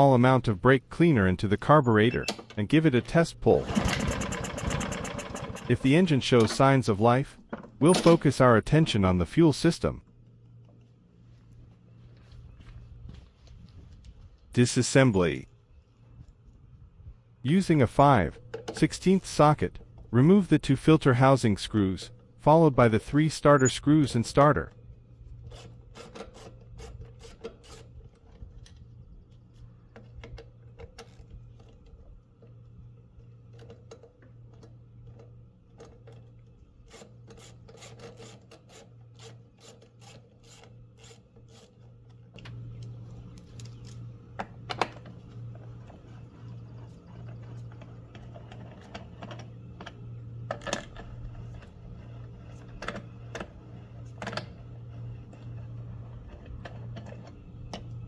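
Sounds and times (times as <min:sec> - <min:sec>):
steady low hum: 0:38.9 - 0:58.0.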